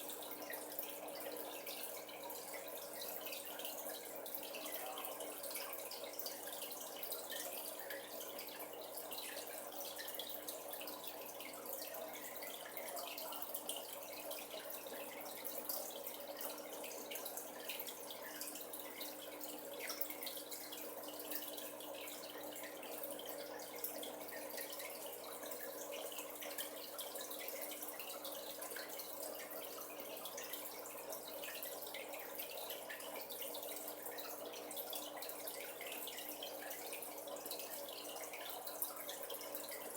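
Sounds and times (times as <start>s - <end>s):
water trickling and dripping: 0.0s - 39.9s.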